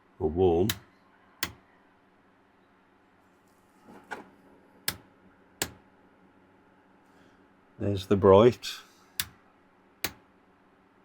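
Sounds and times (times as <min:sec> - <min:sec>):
power switch clicks: 0:09.2 - 0:09.4.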